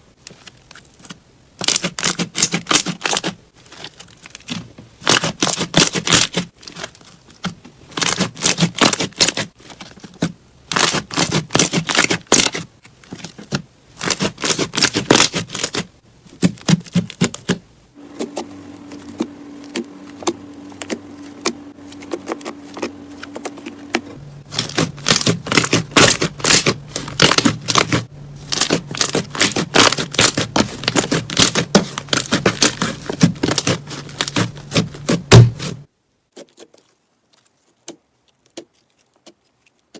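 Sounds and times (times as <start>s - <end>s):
slime squishing: 0.2s - 39.9s
steady low hum: 17.6s - 35.9s.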